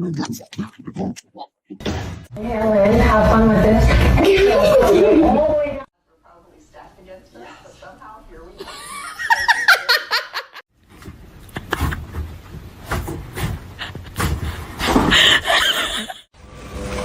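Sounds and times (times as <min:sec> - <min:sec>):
people laughing: 0:04.3 - 0:05.7, 0:08.6 - 0:10.6, 0:15.1 - 0:16.3.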